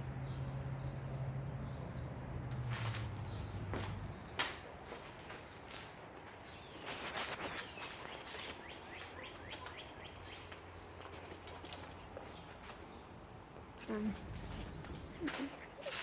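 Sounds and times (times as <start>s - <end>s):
bird chirping: 5.3s - 13.2s, 13.9s - 16.0s.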